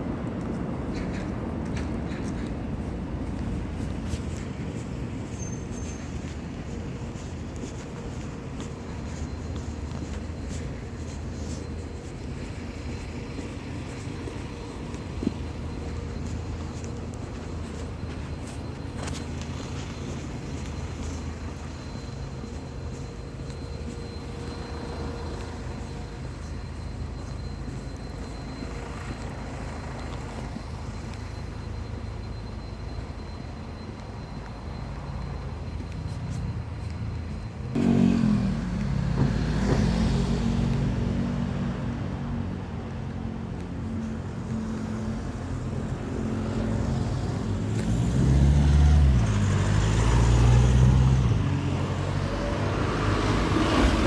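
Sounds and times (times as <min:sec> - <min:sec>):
road traffic rumble: 0:00.0 - 0:54.0
motor vehicle engine passing close: 0:37.7 - 0:41.9.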